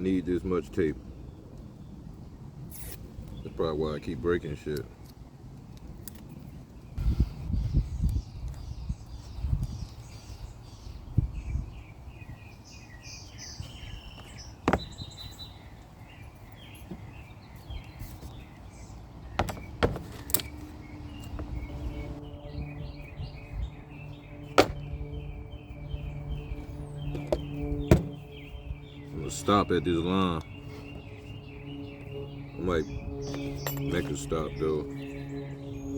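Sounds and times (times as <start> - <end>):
birds chirping: 0.0 - 35.9
sharp knocks on wooden panel: 14.7 - 14.9, 19.4 - 20.2, 24.6 - 24.8, 27.3 - 28.2.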